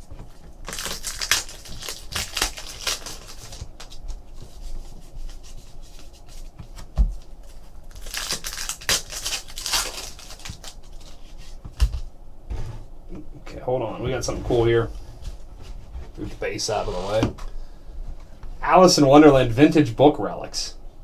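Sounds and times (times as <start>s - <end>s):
card packs crinkling and tearing: 0.6s - 4.6s, 5.2s - 12.0s.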